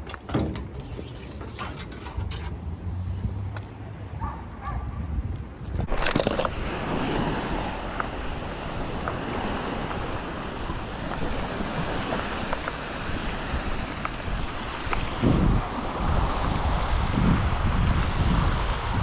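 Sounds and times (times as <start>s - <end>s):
wind buffeting microphone: 0.0s - 19.0s
lake waves washing in: 5.8s - 19.0s.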